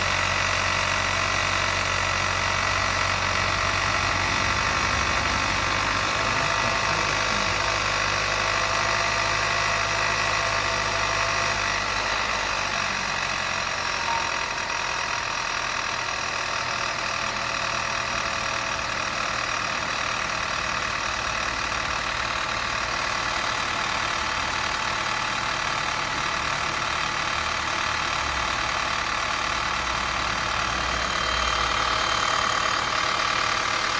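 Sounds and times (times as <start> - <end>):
high-pitched engine whine: 0.0 - 15.4, 28.4 - 33.9
car engine running: 0.0 - 33.9.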